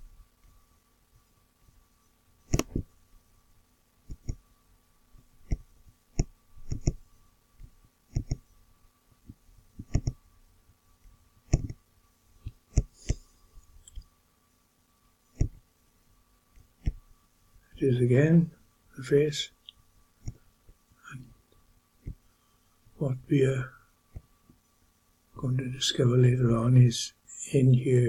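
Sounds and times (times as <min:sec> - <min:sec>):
faint steady hum: 0:00.0 - 0:28.0
computer mouse clicking: 0:02.5 - 0:02.8, 0:04.1 - 0:04.4, 0:05.4 - 0:05.6, 0:06.2 - 0:07.0, 0:08.1 - 0:08.4, 0:09.8 - 0:10.2, 0:11.5 - 0:11.8, 0:12.4 - 0:13.2.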